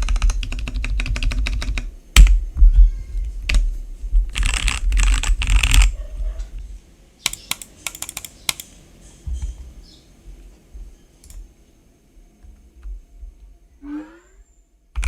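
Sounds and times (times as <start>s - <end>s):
mechanical keyboard typing: 0.0s - 2.3s, 4.3s - 6.0s, 7.2s - 8.7s.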